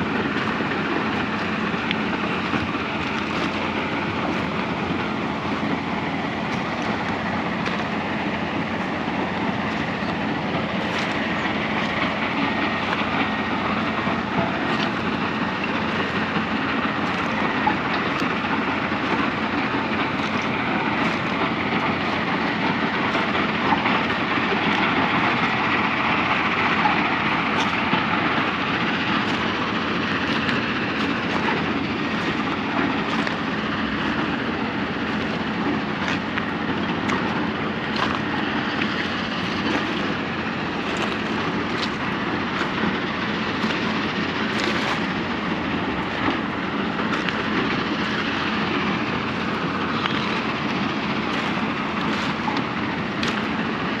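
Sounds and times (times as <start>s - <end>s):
steady rushing noise: 0.0s - 54.0s.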